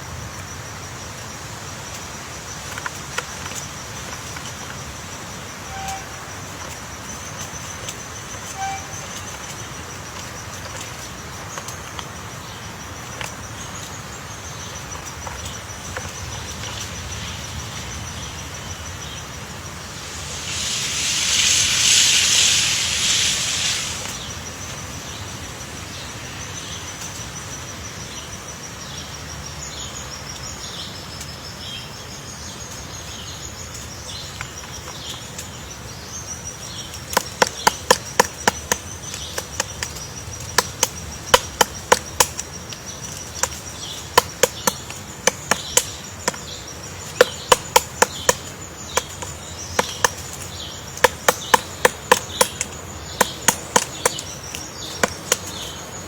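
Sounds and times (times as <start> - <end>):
woodpecker pecking wood: 19.7 - 24.3, 36.9 - 55.9.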